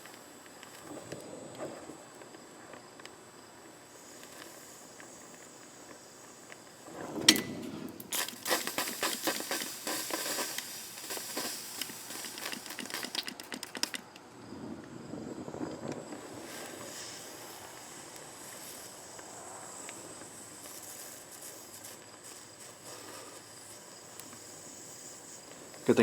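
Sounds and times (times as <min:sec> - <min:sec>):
heated metal crackling and popping: 0:00.0 - 0:14.3
torch hissing: 0:00.0 - 0:26.0
sharp click: 0:11.8 - 0:14.2.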